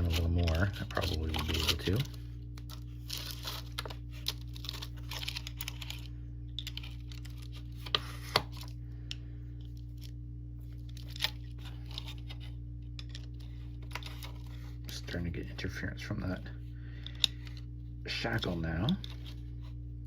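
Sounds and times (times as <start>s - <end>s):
steady low hum: 0.0s - 20.0s.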